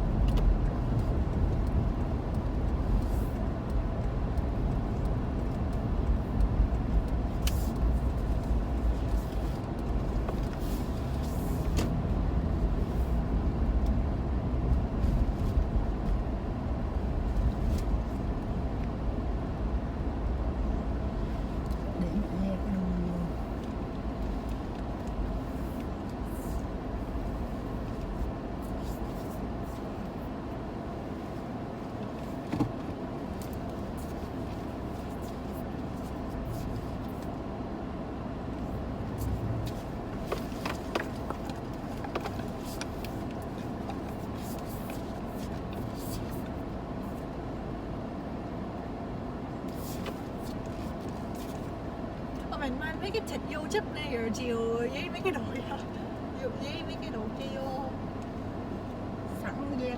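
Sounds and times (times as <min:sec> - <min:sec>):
vehicle engine rumble and road noise: 0:00.0 - 0:59.9.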